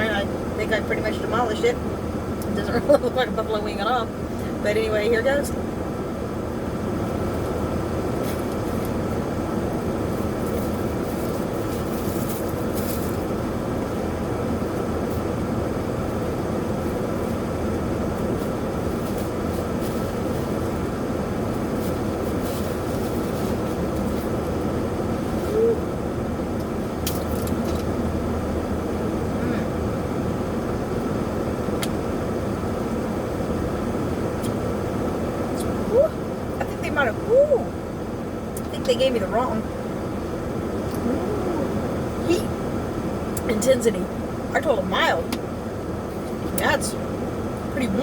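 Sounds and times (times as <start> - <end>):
mechanical hum and rumble: 0.0 - 48.0
person humming mm: 25.5 - 25.9.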